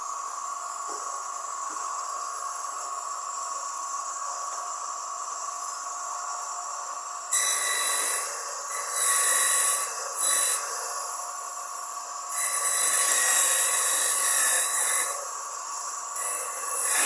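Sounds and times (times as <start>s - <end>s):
coconut rasping on grater: 7.4s - 11.1s, 12.3s - 15.4s, 16.2s - 17.0s.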